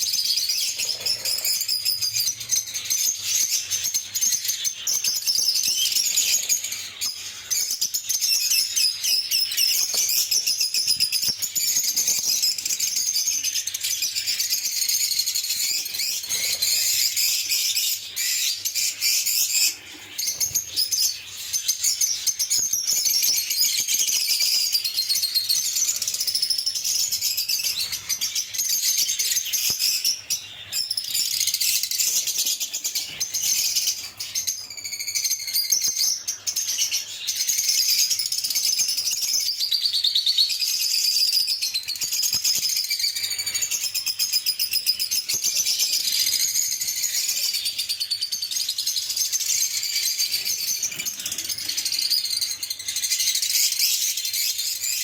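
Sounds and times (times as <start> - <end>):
lovebirds chirping: 0.0 - 55.0.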